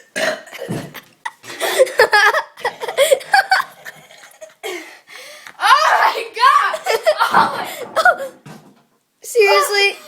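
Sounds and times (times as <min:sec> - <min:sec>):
child giggling and laughing: 0:05.9 - 0:08.3.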